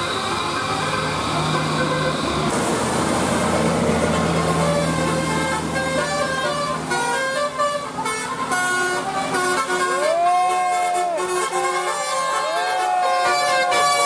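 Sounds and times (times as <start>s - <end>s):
bus engine hum: 0.0s - 14.0s
musical air horn playing tune: 4.0s - 14.0s.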